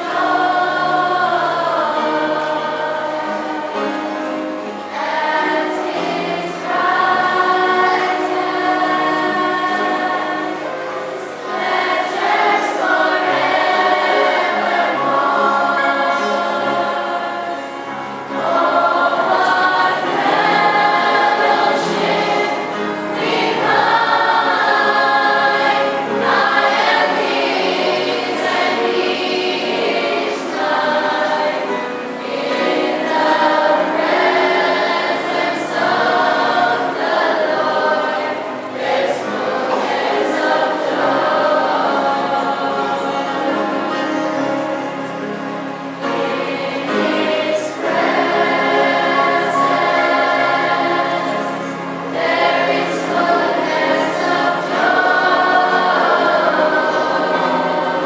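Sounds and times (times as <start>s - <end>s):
church choir singing: 0.0s - 58.0s.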